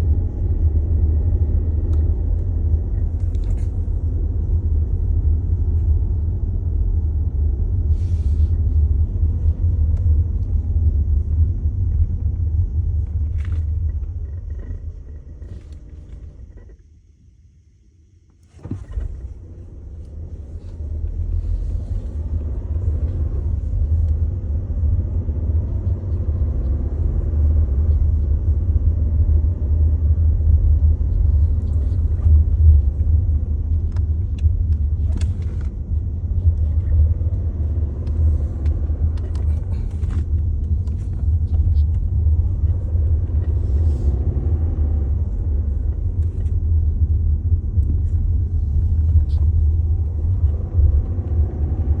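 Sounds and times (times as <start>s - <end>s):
deep engine rumble: 0.0s - 52.0s
car engine restarting: 18.4s - 52.0s.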